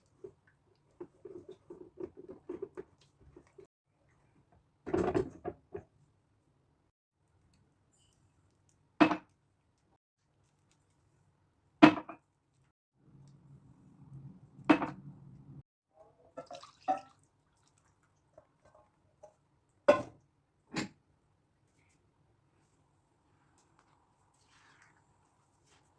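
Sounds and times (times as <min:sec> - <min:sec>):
kitchenware knocks and clacks: 0:19.9 - 0:20.2.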